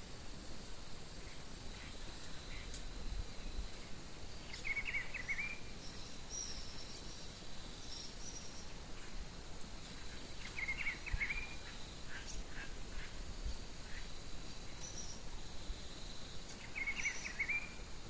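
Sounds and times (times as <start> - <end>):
high insect drone: 0.0 - 18.0
birds singing: 4.4 - 9.2, 9.9 - 15.3, 16.4 - 17.8.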